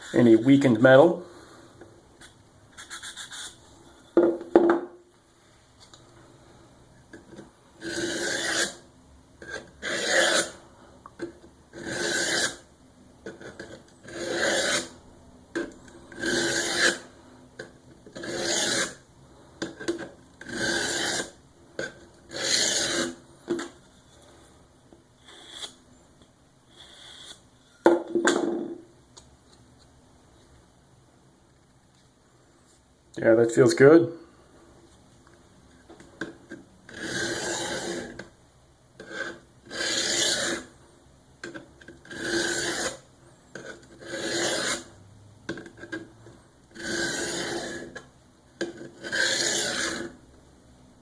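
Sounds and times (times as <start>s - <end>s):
knife rasping through wood: 7.8s - 8.8s, 9.4s - 10.6s, 11.8s - 12.6s, 13.4s - 14.9s, 16.2s - 17.0s, 18.2s - 19.0s, 20.4s - 23.2s, 36.9s - 38.2s, 39.0s - 40.7s, 42.1s - 43.0s, 43.6s - 44.9s, 46.8s - 48.0s, 48.8s - 50.1s.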